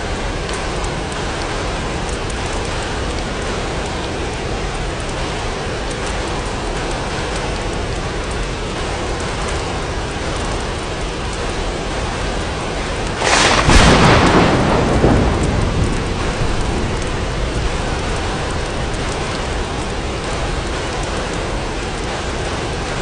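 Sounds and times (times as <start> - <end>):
steady rain: 0.0 - 23.0
thunderclap rumbling: 12.3 - 23.0.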